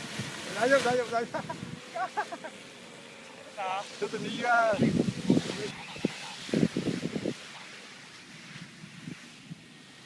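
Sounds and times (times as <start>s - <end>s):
wind rushing over microphone: 0.0s - 1.9s, 4.0s - 9.8s.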